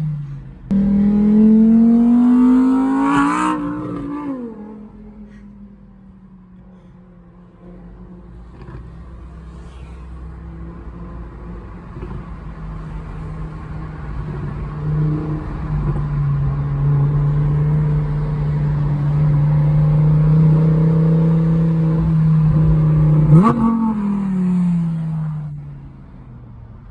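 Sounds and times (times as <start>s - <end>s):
sports car engine revving: 0.7s - 5.2s, 13.1s - 25.6s.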